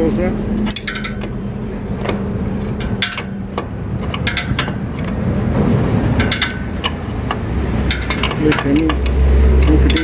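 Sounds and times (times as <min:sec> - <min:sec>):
steady low rumble: 0:00.0 - 0:10.0
metal tools clinking: 0:00.6 - 0:05.3, 0:06.1 - 0:10.0.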